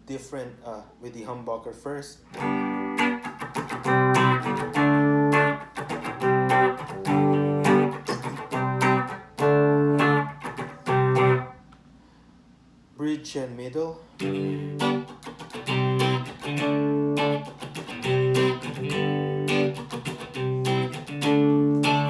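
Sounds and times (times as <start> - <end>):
electric guitar strummed chords: 2.3 - 11.6, 14.2 - 22.0.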